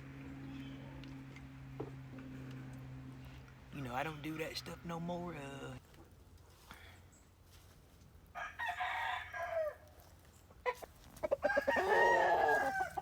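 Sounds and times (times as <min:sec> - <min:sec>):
rooster crowing: 0:08.3 - 0:09.9, 0:11.3 - 0:13.0.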